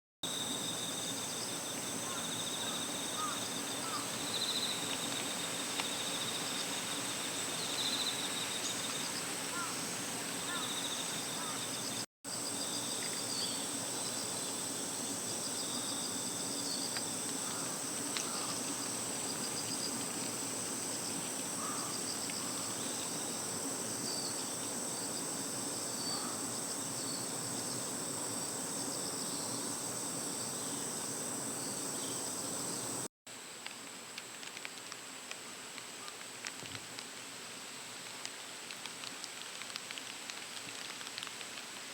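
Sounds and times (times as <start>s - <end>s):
insects shrilling drone: 0.3s - 33.1s
insects pulsing trills: 0.3s - 34.8s.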